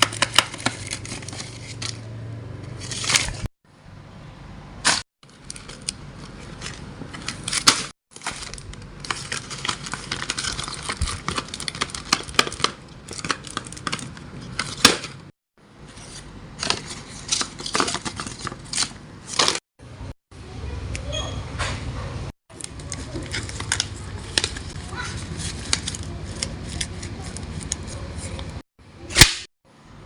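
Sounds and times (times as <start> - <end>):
paper crinkling and rustling: 0.0 - 2.1, 2.8 - 3.5, 4.9 - 19.6, 22.5 - 28.6.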